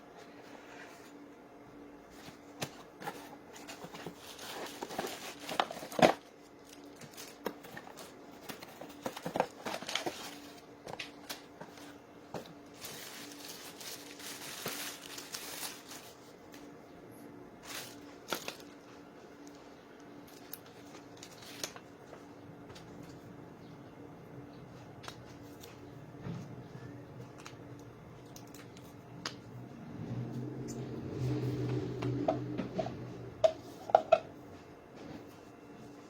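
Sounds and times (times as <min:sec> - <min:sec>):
faint steady hum: 0:00.0 - 0:36.0
crinkling and rustling: 0:02.0 - 0:16.7, 0:17.6 - 0:23.3.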